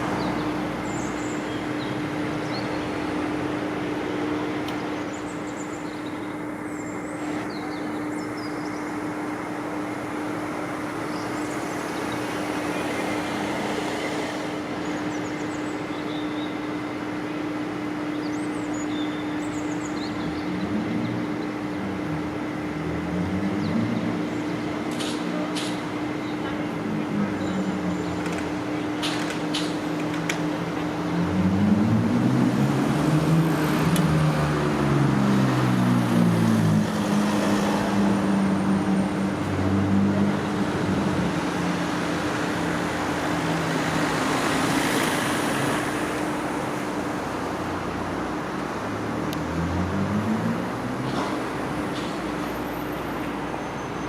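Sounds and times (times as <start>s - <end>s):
motor or traffic hum: 0.0s - 54.0s
small birds chirping: 4.7s - 9.3s.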